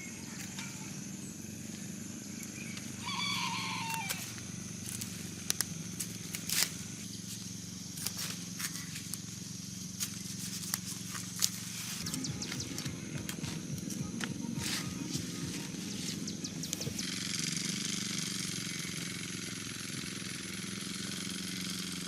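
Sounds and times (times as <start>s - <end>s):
low hum: 0.0s - 19.1s
high-pitched hiss: 0.0s - 20.1s
animal call: 2.5s - 4.4s.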